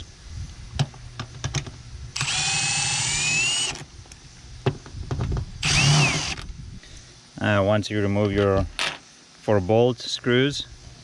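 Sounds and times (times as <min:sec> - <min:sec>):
power driver whining: 0:02.2 - 0:03.8, 0:05.6 - 0:06.5.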